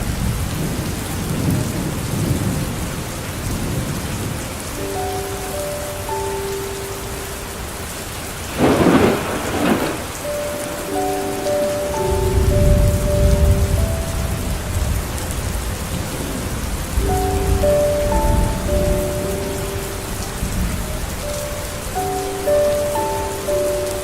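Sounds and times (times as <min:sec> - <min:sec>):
steady rain falling: 0:00.0 - 0:24.0
rolling rumble of thunder: 0:08.4 - 0:11.0, 0:12.1 - 0:21.8
sharp thunderclap: 0:08.5 - 0:10.2.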